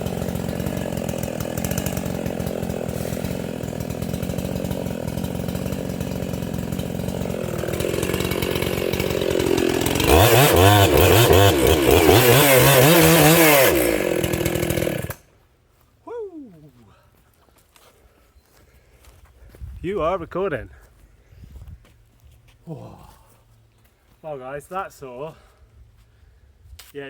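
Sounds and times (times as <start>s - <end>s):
chainsaw cutting wood: 0.0s - 15.3s.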